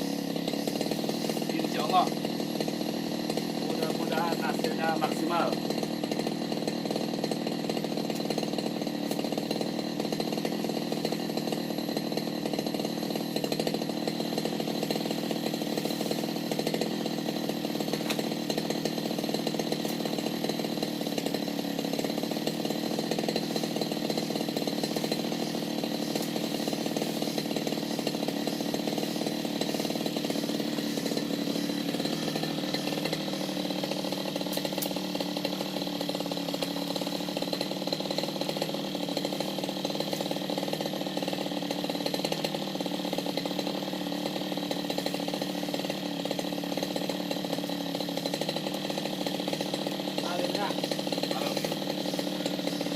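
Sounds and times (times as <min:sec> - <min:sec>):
brush cutter engine running: 0:00.0 - 0:52.9.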